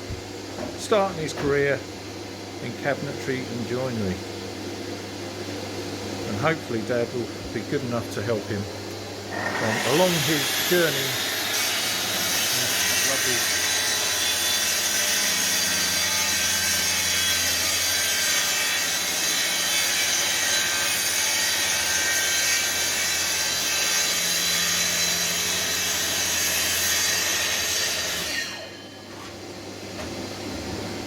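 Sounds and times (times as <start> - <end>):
track saw cutting: 9.3 - 28.8.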